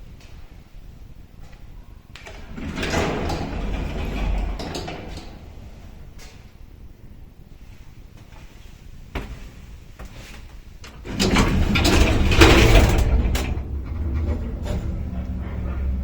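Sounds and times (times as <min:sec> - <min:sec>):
steady low hum: 0:00.0 - 0:16.0
lift doors clattering: 0:02.2 - 0:06.6, 0:10.9 - 0:16.0.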